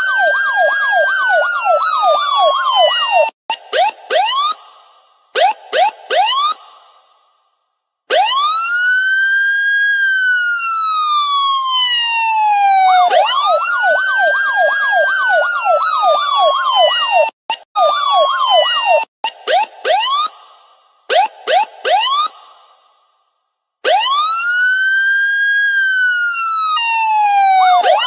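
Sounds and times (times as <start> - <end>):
voices imitating police siren: 0.0 - 4.6, 8.1 - 20.4, 21.1 - 22.4, 23.9 - 28.0.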